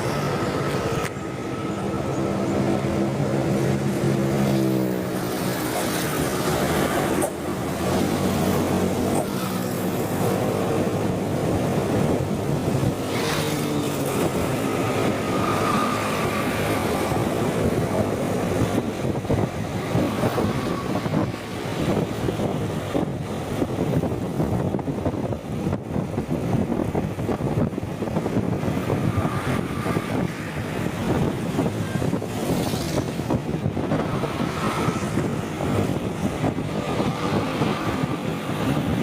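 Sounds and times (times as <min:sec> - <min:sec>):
rumbling wind: 0:00.0 - 0:39.0
vehicle noise: 0:00.0 - 0:39.0.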